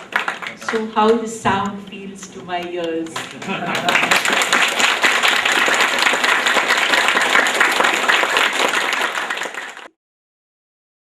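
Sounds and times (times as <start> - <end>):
audience applauding: 0.0 - 1.1, 3.1 - 10.0.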